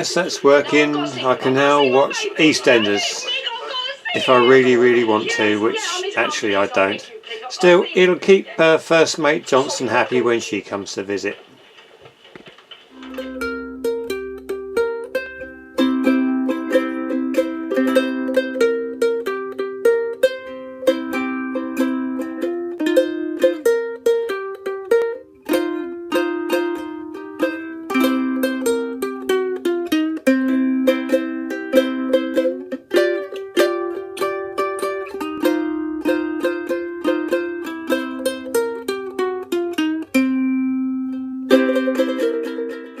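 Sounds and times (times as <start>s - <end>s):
plucked-string tune: 12.9s - 43.0s.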